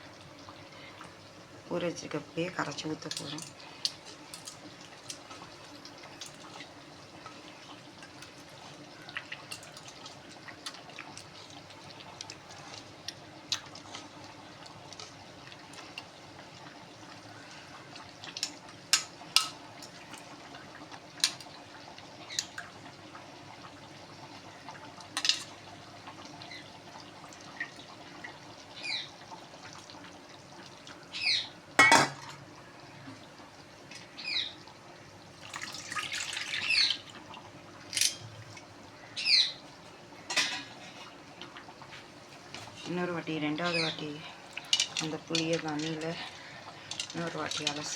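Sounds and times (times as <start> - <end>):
water splashes: 35.4 - 37.3.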